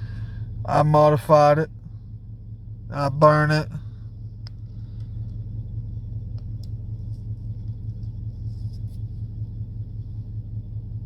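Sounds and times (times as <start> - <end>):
low rumble: 0.0 - 11.0.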